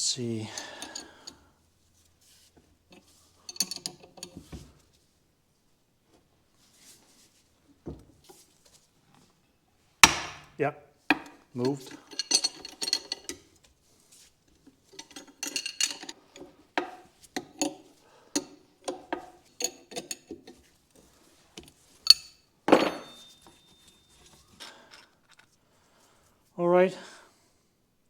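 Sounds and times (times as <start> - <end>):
metal tools clinking and clanking: 0.2 - 1.4, 2.9 - 4.6, 11.2 - 13.6, 14.6 - 20.7, 21.6 - 25.5.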